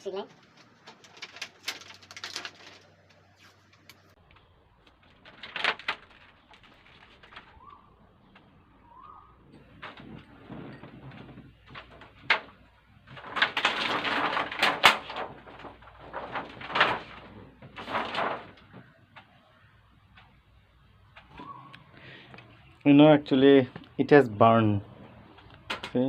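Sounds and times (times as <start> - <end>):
scraping and rustling of parts: 0.0 - 8.6, 9.5 - 19.4, 25.1 - 26.0
sharp clicks and knocks: 9.5 - 19.4, 25.3 - 26.0.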